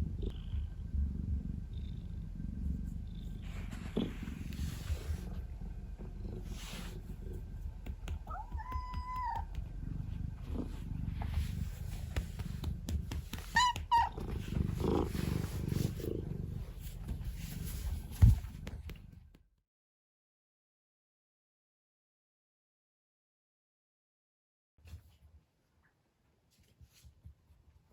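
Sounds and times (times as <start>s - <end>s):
cat purring: 0.0s - 19.4s
cat chirping: 8.3s - 9.6s, 13.4s - 14.3s
cat meowing: 8.3s - 9.6s, 13.5s - 14.2s.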